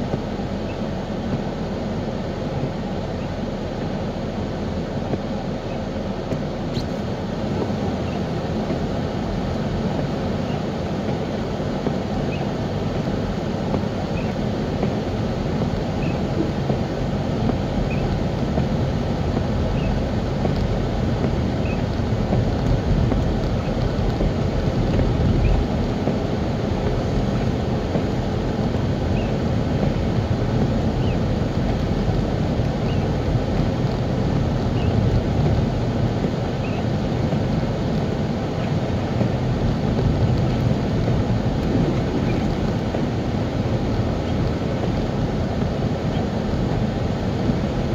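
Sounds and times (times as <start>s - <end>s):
car road and engine rumble: 0.0s - 47.9s.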